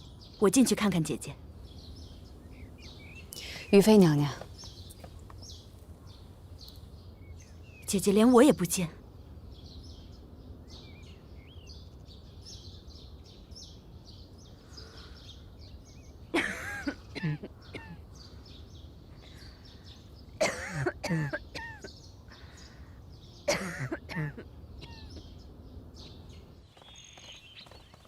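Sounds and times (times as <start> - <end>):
small birds chirping: 0.0 - 28.0
woman coughing: 16.4 - 18.0, 20.4 - 21.9, 23.5 - 25.1.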